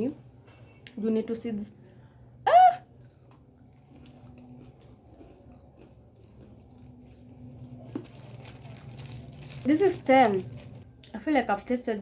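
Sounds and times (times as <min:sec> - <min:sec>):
chewing crunchy snack: 0:03.0 - 0:09.7.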